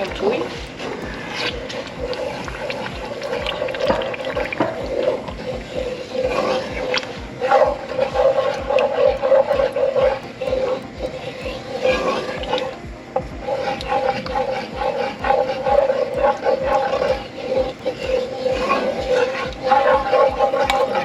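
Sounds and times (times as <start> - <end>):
steady hum: 0.0 - 21.0.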